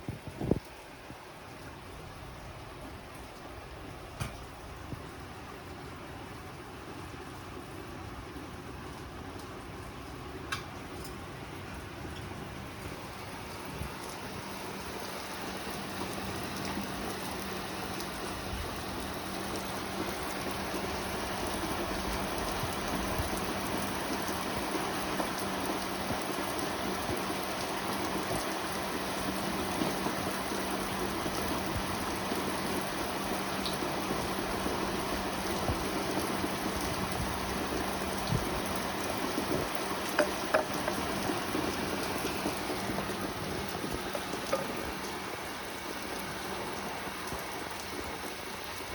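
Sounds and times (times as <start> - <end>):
rain pouring: 0.0 - 48.9
sharp drips: 10.5 - 48.9.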